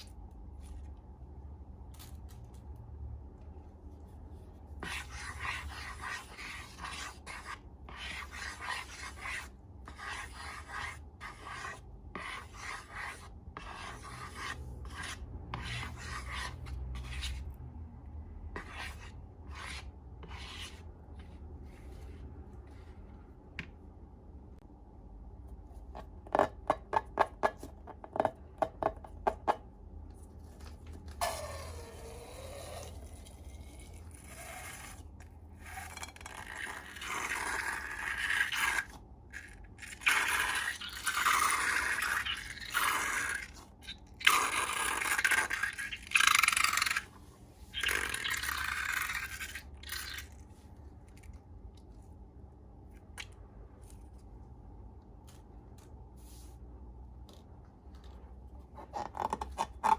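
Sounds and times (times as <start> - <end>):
slime scraping and stirring: 0.0 - 2.8, 3.4 - 17.7, 18.5 - 23.4, 30.0 - 52.2.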